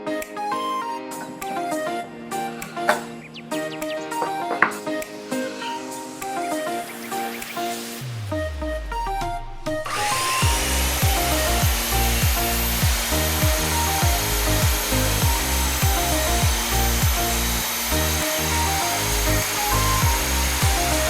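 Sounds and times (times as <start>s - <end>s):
music with steady beat: 0.0s - 21.0s
power saw whining: 1.2s - 8.2s, 9.7s - 21.0s.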